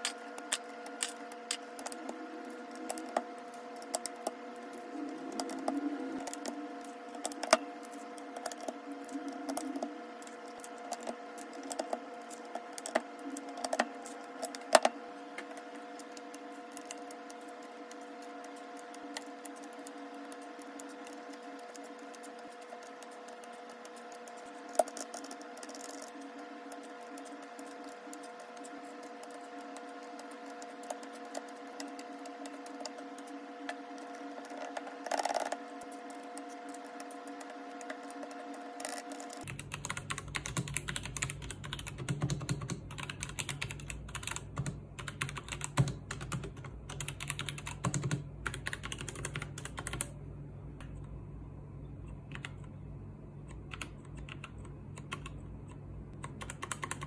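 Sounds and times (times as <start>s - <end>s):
electrical hum: 0.0s - 57.0s.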